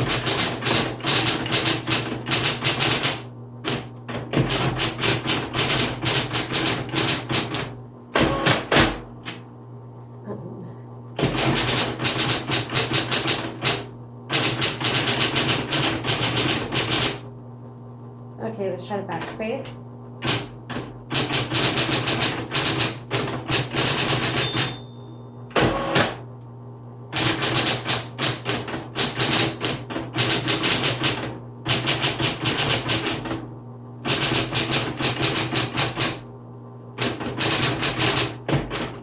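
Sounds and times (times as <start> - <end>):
typewriter motor hum: 0.0 - 9.5, 11.1 - 17.4, 20.2 - 26.3, 27.1 - 36.3, 37.0 - 39.0
typewriter key strikes: 20.2 - 24.8, 27.2 - 33.4, 37.0 - 39.0.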